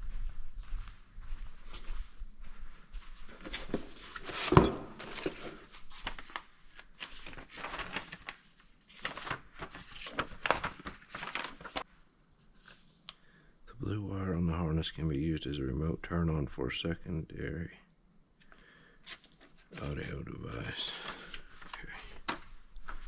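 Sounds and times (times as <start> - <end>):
wiring rustling and crinkling: 5.1 - 11.9, 20.9 - 23.0.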